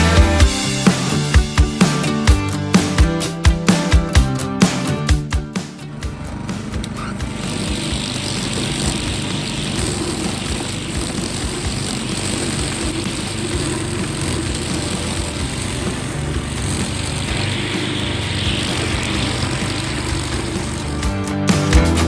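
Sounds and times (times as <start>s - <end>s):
string trimmer cutting weeds: 0.6s - 1.4s, 5.8s - 21.2s.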